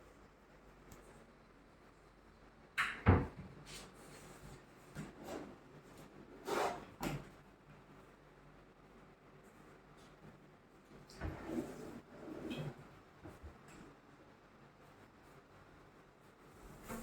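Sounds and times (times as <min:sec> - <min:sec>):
wooden cabinet sliding: 0:11.2 - 0:12.8.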